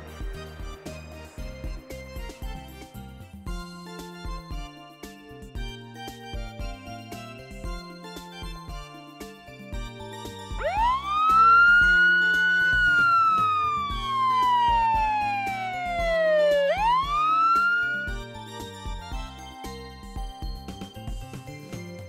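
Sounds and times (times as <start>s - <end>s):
light background music: 0.0s - 22.0s
police siren wail: 10.6s - 18.7s.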